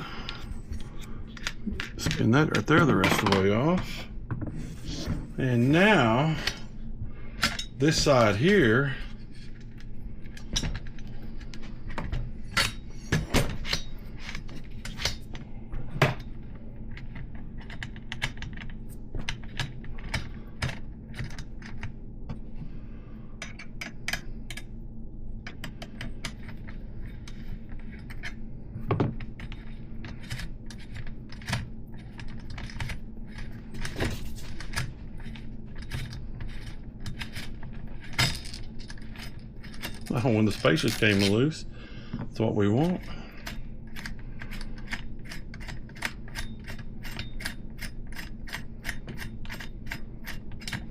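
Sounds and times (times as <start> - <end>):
low steady hum: 0.0 - 50.9.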